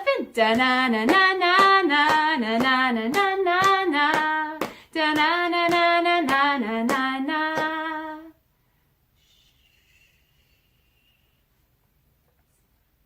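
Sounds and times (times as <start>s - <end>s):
woman singing: 0.0s - 8.4s
sharp hand claps: 0.5s - 7.8s.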